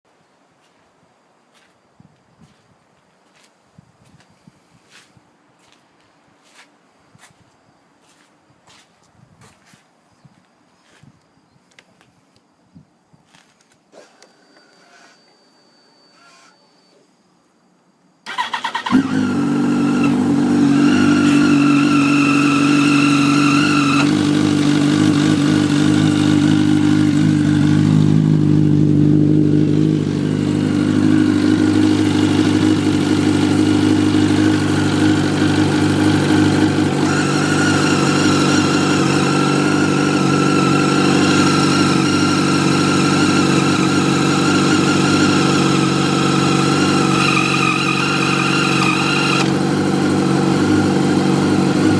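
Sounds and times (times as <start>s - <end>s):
high-pitched squealing whine: 14.0s - 17.2s, 18.8s - 28.4s, 30.0s - 49.6s
motorcycle engine running: 18.3s - 51.9s.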